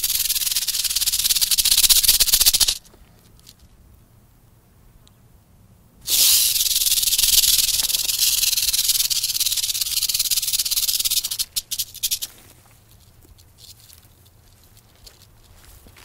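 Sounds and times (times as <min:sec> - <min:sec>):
rattlesnake rattle buzzing: 0:00.0 - 0:02.9, 0:06.0 - 0:15.2.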